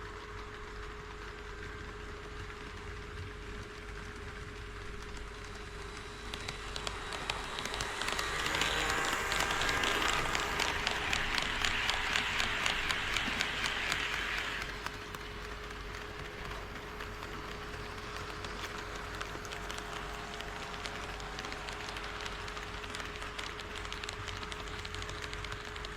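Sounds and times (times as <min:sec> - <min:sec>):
model train rolling: 0:00.0 - 0:25.9
wheels clicking over rail joints: 0:02.6 - 0:25.9.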